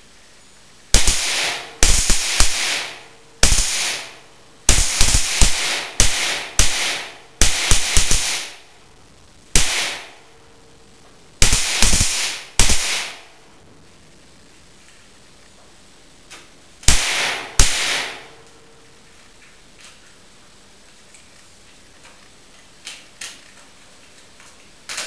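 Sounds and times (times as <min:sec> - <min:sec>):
sharp ringing bangs: 0:01.0 - 0:08.6, 0:09.6 - 0:10.2, 0:11.4 - 0:13.3, 0:16.9 - 0:18.5.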